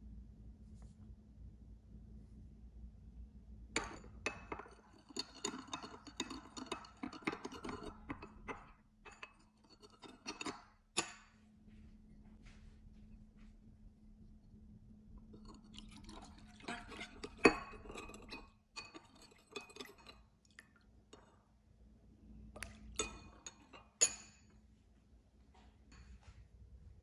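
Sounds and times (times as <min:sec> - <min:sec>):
utensils and dishes clinking: 0:03.8 - 0:11.3, 0:15.4 - 0:20.3.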